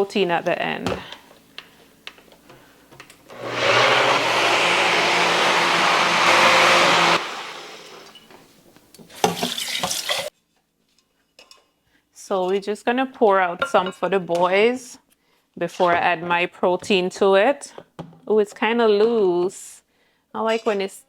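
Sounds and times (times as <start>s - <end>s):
blender motor running: 3.3s - 8.2s.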